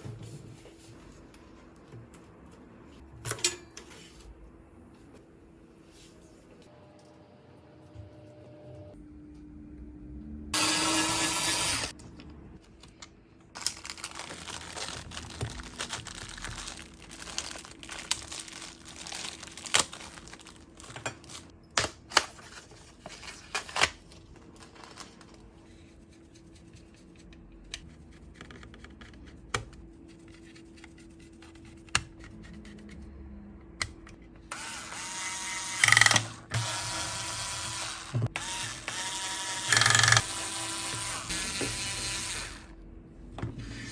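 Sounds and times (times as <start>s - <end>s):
tools and parts clicking: 35.8s - 36.4s, 39.7s - 40.3s
rasping ratchet-like noise: 39.1s - 40.5s.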